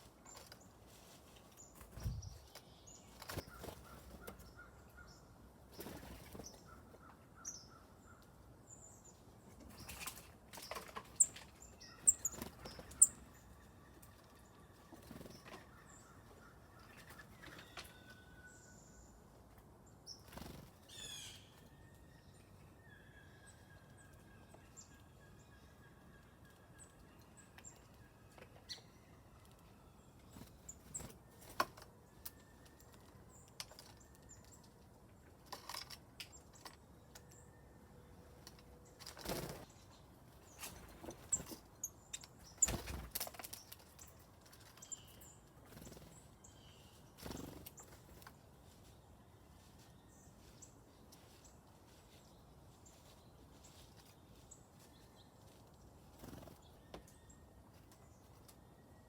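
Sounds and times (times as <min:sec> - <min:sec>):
wing flutters: 0:42.5 - 0:43.9.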